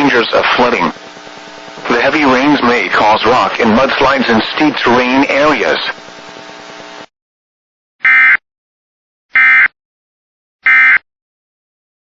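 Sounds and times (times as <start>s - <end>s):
buzzy digital data tones: 0.0s - 7.1s.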